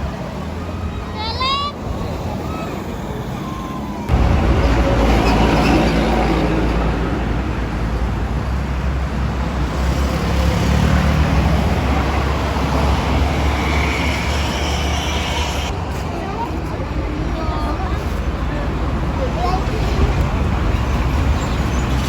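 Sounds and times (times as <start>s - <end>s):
road traffic passing: 0.0s - 22.0s
loud low rumble: 4.1s - 8.6s.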